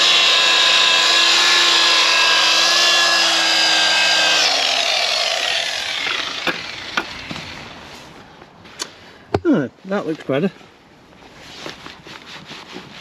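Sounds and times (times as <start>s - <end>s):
electric polisher whining: 0.0s - 7.1s.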